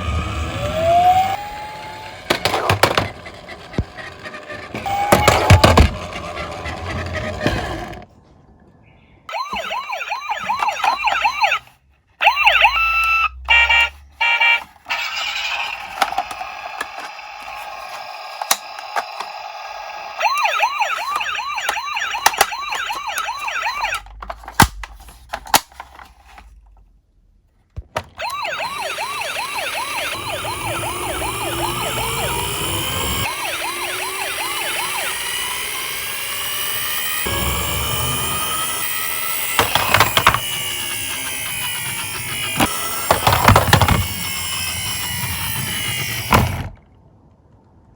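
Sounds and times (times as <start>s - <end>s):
police siren yelping: 0.0s - 7.8s, 9.3s - 24.2s, 28.2s - 46.6s
sirens wailing: 0.0s - 8.0s, 9.3s - 24.2s, 28.2s - 46.6s.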